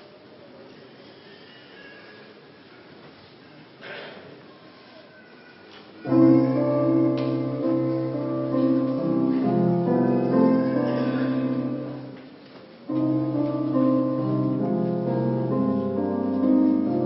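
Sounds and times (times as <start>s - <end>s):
keyboard playing sustained chords: 6.1s - 12.3s, 12.9s - 17.0s.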